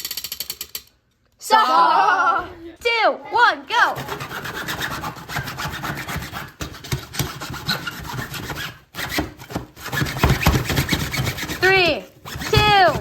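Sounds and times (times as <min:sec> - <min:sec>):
hand saw sawing: 0:03.9 - 0:13.0.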